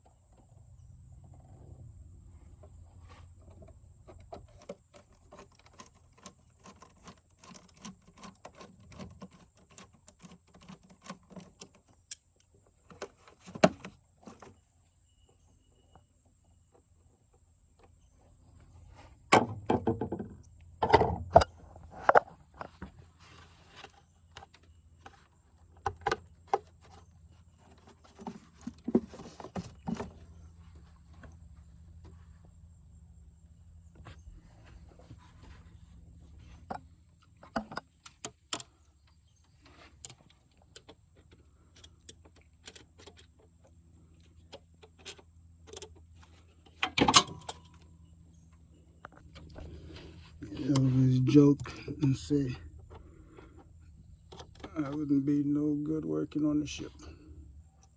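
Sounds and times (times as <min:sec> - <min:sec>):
parts clunking down: 0:19.2 - 0:32.6, 0:33.8 - 0:55.1.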